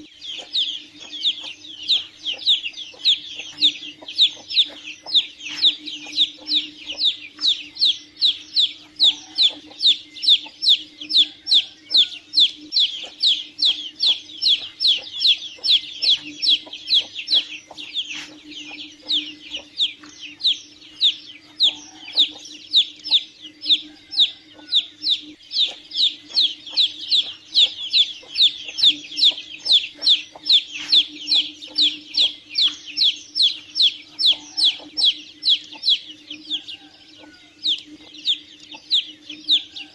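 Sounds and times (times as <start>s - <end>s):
chick peeping: 0.0s - 39.9s.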